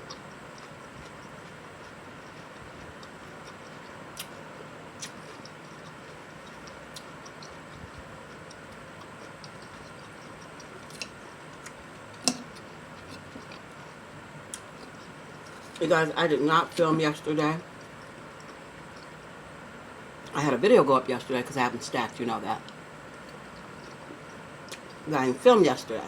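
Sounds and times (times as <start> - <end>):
mouth and teeth clicks eating: 0.0 - 15.9, 17.7 - 19.2, 22.6 - 25.1.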